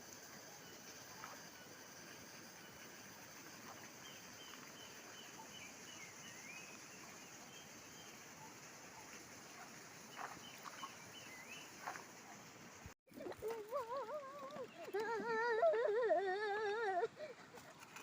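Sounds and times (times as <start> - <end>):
steady hiss: 0.0 - 13.0
bird chirping: 3.8 - 12.5.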